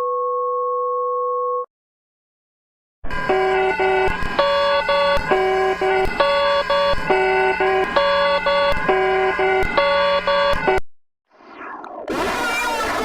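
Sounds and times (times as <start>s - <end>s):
electronic alarm beeps: 3.3s - 10.8s.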